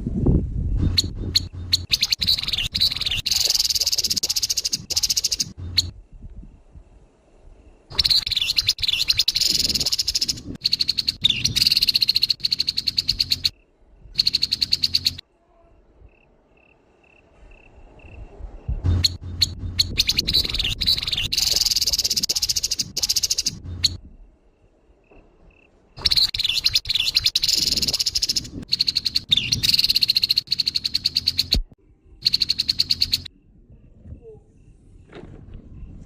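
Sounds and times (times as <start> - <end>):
bird harsh rattling call: 0.9 - 5.9, 7.9 - 13.5, 19.0 - 24.0, 26.0 - 31.5.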